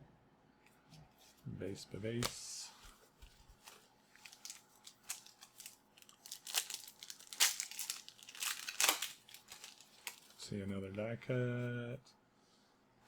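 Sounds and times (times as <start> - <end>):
foil wrapper crinkling: 3.6 - 10.4.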